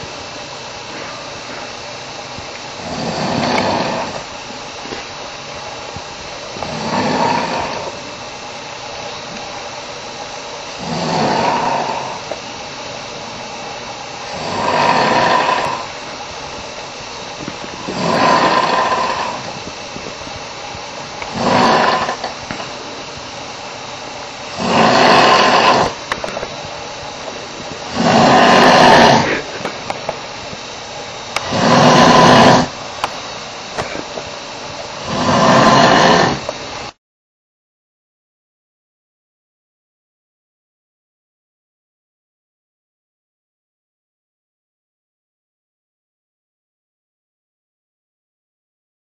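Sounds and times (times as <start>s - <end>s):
man snoring loudly: 2.8s - 4.3s, 6.6s - 8.2s, 10.7s - 12.3s, 14.2s - 16.1s, 17.8s - 19.6s, 21.2s - 22.9s, 24.5s - 26.1s, 27.8s - 29.5s, 31.4s - 32.8s, 35.0s - 36.5s.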